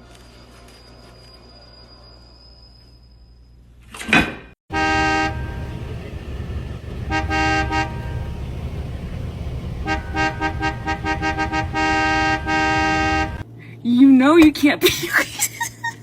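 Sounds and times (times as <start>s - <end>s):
vehicle horn honking: 4.7s - 6.0s, 7.0s - 8.5s, 9.8s - 13.4s
low rumble: 4.9s - 13.4s.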